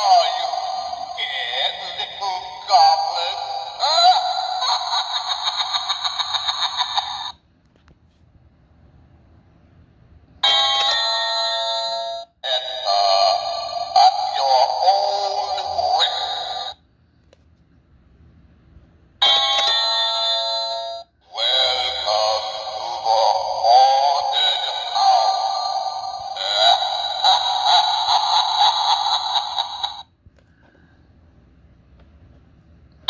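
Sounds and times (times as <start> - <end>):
recorded wavering voice effect: 0.0 - 7.3, 12.4 - 16.8, 21.3 - 30.0.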